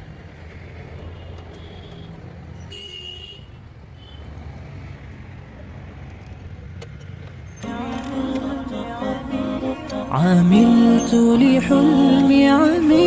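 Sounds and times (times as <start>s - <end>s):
road traffic rumble: 0.0s - 13.0s
vehicle horn toot: 2.7s - 4.2s.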